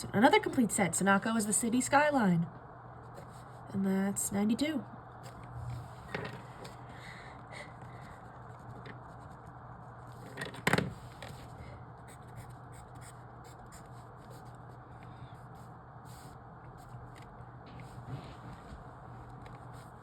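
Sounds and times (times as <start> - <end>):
pen scratching on paper: 12.0 - 14.6.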